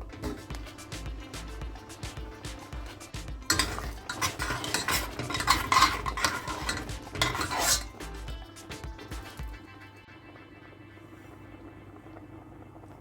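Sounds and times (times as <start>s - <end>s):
spoon scraping cooking pot: 0.0s - 9.4s.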